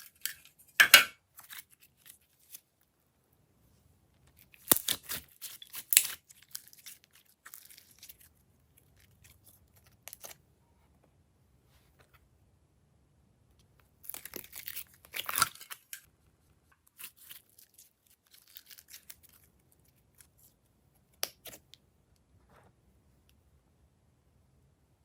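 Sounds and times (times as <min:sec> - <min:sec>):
slime crackling and tearing: 0:04.4 - 0:10.4, 0:14.0 - 0:16.1, 0:16.9 - 0:20.4.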